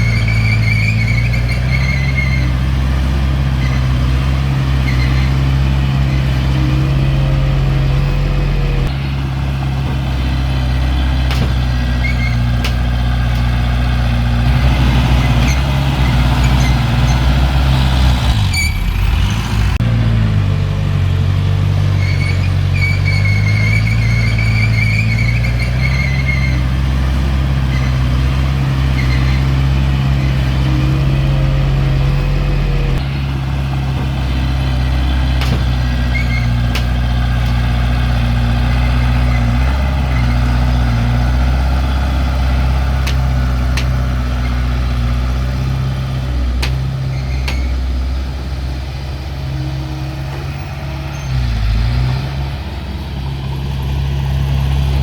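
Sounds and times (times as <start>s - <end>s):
diesel engine running under load: 0.0s - 55.0s
sharp clicks or knocks: 43.0s - 44.0s, 46.6s - 46.9s.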